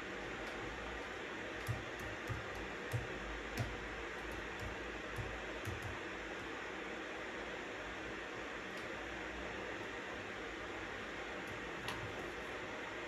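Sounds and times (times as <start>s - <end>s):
steady white noise: 0.0s - 13.0s
computer keyboard keystrokes: 1.6s - 6.5s, 11.5s - 12.5s.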